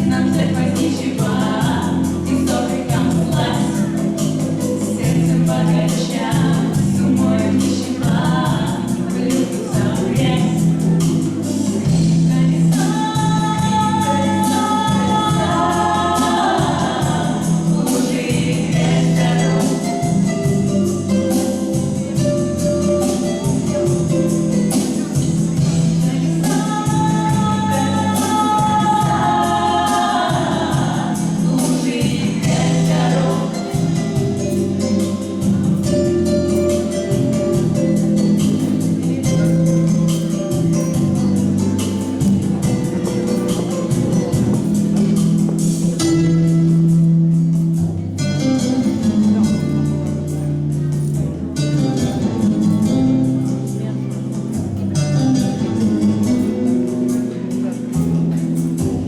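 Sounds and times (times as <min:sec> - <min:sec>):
guitar background music: 0:00.0 - 0:59.0
rhythmic accompaniment: 0:00.0 - 0:59.0.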